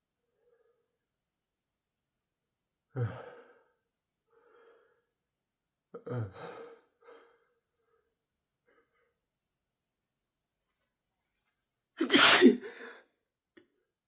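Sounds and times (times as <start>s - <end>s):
man gasping before sneeze: 12.0s - 13.0s.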